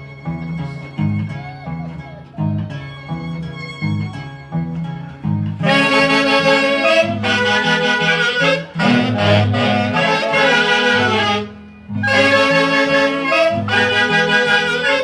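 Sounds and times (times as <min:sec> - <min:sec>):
saxophone section melody: 0:05.6 - 0:15.0.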